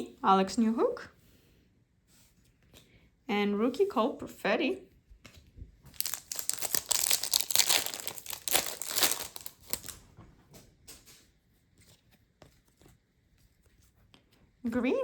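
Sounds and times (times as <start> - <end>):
cards clicking and rustling: 5.9 - 10.0
foil wrapper crinkling and tearing: 5.9 - 10.0.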